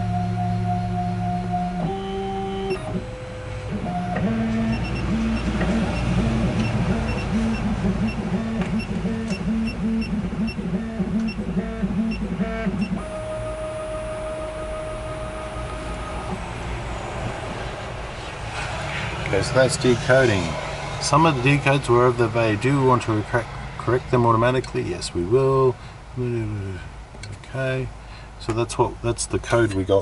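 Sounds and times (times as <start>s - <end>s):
stepper motors whining: 0.0s - 22.7s.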